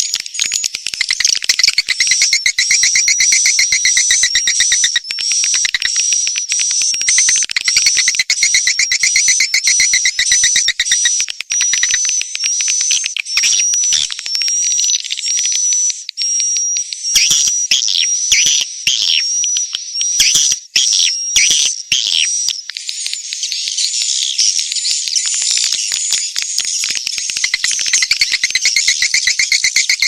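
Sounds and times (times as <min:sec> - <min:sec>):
rapid bird clicks: 0:00.0 - 0:16.6, 0:19.1 - 0:30.0
birds chirping and twittering: 0:00.0 - 0:30.0.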